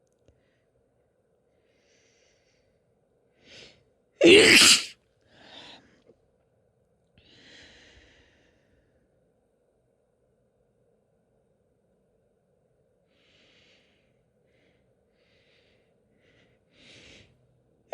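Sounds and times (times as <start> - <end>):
woman sneezing: 4.2 - 4.9
soft breaths out: 7.2 - 9.0.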